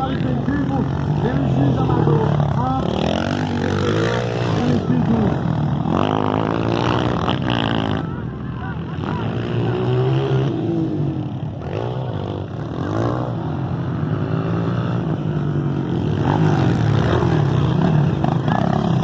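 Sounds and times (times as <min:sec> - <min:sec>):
motorcycle engines revving: 0:00.0 - 0:19.0.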